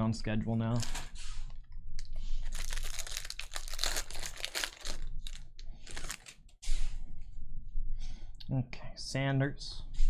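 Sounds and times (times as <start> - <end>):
plastic packaging crinkling: 0.7 - 1.2, 2.4 - 6.5.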